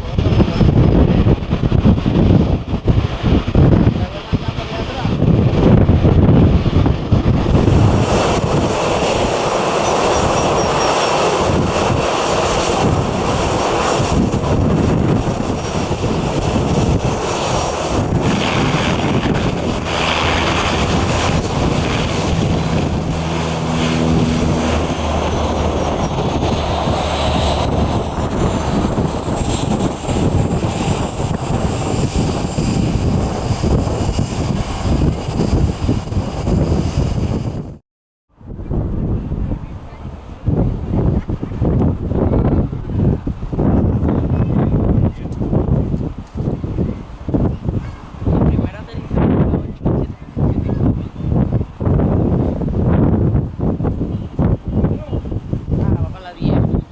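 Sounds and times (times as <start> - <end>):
jet engines running: 0.0 - 37.8
wind buffeting microphone: 0.0 - 56.9.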